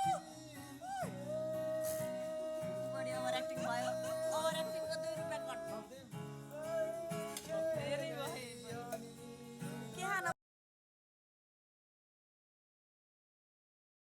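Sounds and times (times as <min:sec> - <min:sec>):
person singing long notes: 0:00.0 - 0:09.8
acoustic guitar strumming: 0:00.0 - 0:10.4.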